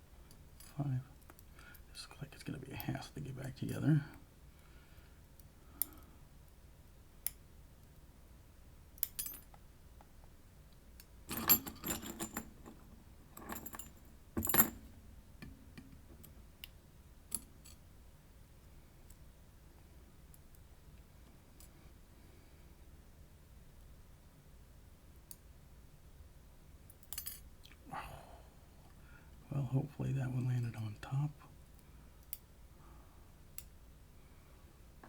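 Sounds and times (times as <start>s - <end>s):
small metal parts clicking: 9.0s - 9.6s.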